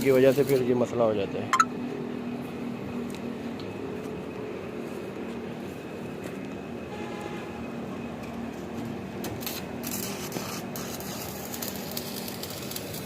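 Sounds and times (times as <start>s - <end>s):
arc welding crackling: 0.0s - 0.9s, 8.6s - 13.0s
workshop hum: 0.0s - 13.0s.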